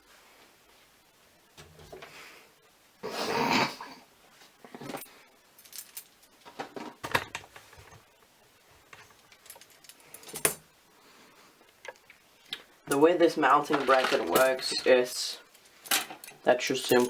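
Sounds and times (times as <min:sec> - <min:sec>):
parts clicking and knocking: 0:13.7 - 0:15.0.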